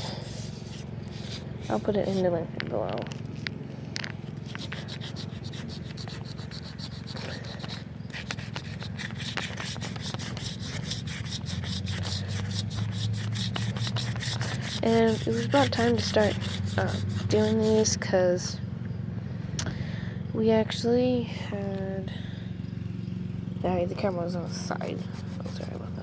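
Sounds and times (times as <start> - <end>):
sandpaper rubbing on metal rim: 0.0 - 2.3, 4.4 - 18.0, 24.2 - 26.0.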